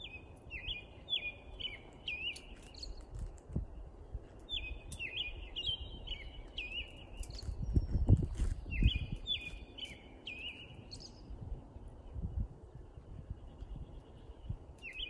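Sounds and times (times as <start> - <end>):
bird chirping: 0.0 - 15.0.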